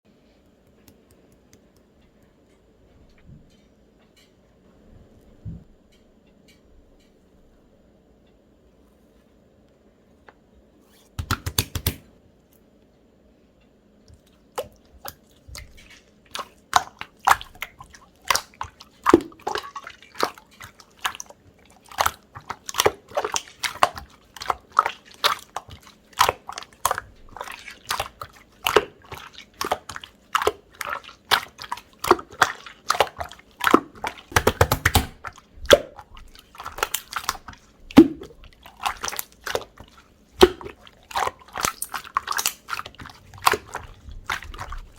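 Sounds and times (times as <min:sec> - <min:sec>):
slime air-pocket pops: 0:11.2 - 0:12.1
slime squishing with sticky clicks: 0:11.2 - 0:12.1, 0:14.1 - 0:44.9.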